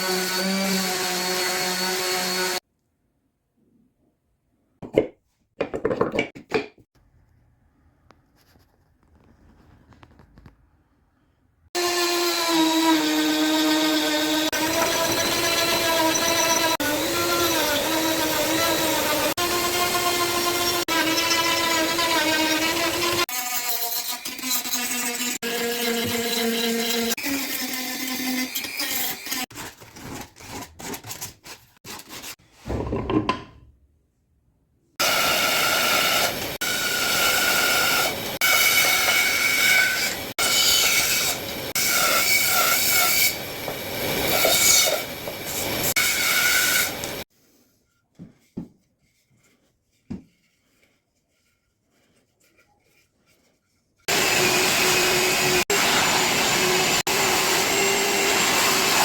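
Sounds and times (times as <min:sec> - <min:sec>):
power tool running: 0:11.8 - 0:23.3, 0:54.1 - 0:59.0.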